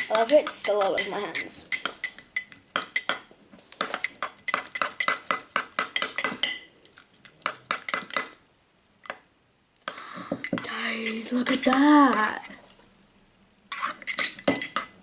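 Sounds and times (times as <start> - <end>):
stirring clinks in a bowl: 0.0 - 6.7, 7.4 - 8.4, 10.4 - 12.4, 13.7 - 15.0.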